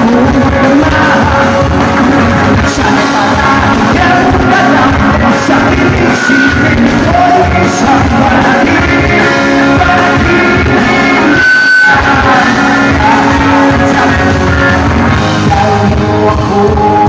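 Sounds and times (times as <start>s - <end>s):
live pop-rock band playing: 0.0s - 17.0s.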